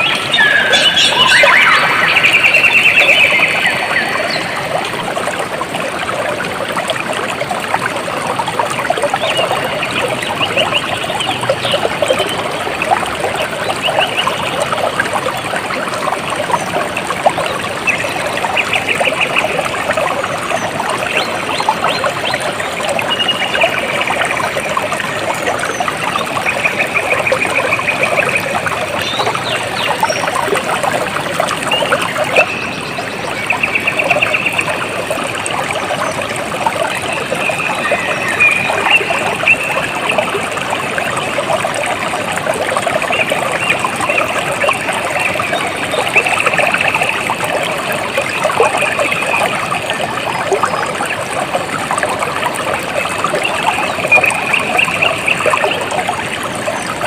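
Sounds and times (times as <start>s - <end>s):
water trickling and splashing: 0.0s - 57.0s.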